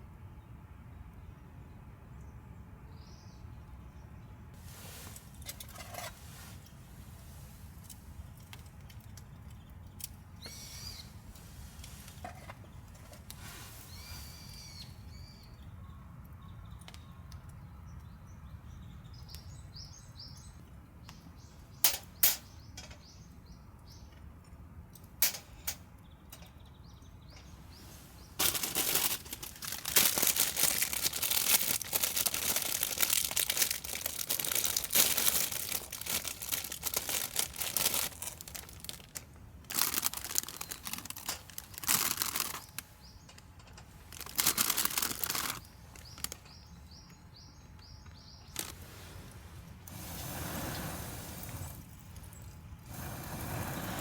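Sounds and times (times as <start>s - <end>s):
faint bird calls: 10.4s - 11.7s, 12.7s - 17.3s
loud crinkling and rustling: 27.8s - 46.7s, 48.4s - 50.7s.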